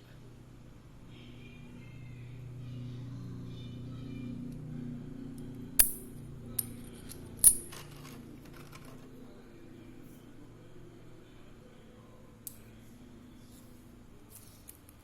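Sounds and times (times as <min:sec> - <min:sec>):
faint low hum: 0:00.0 - 0:15.0
metallic clicks: 0:05.8 - 0:07.8.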